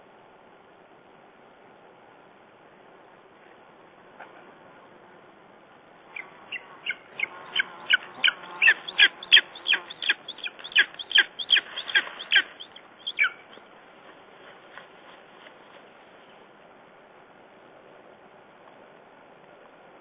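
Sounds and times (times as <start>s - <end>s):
eagle sharp calls: 6.1s - 13.7s.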